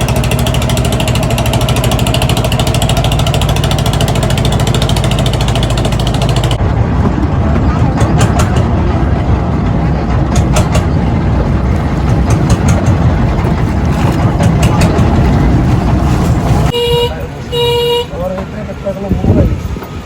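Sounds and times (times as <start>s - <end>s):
moving vehicle rumble: 0.0s - 20.0s
horn honking short toots: 16.7s - 18.3s.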